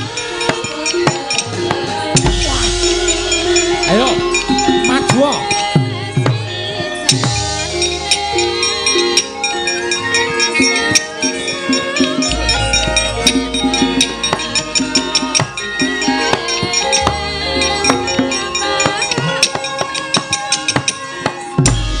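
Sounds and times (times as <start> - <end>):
bronze metallophones playing: 0.0 - 22.0
deep ringing low note: 2.2 - 6.0, 12.3 - 16.3.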